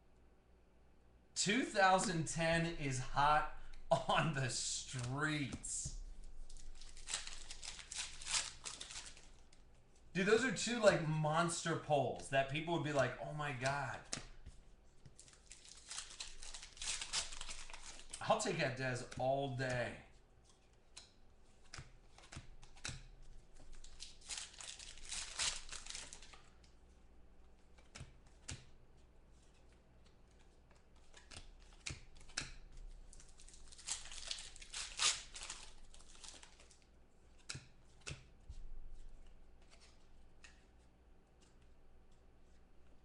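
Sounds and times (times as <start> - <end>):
plastic packaging crinkling: 6.1 - 9.6, 15.2 - 18.2, 23.6 - 26.7, 33.1 - 36.9.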